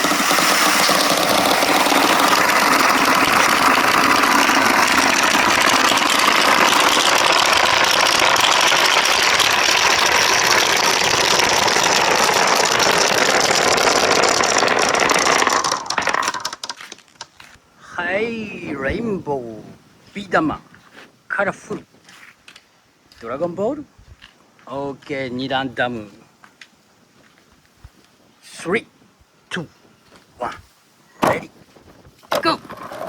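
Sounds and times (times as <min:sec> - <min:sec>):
marbles rolling and clattering: 0:00.0 - 0:17.4.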